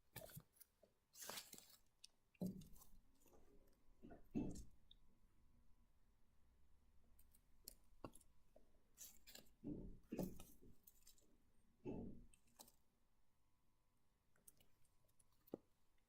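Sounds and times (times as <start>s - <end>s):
plastic bags rustling: 1.2s - 1.9s.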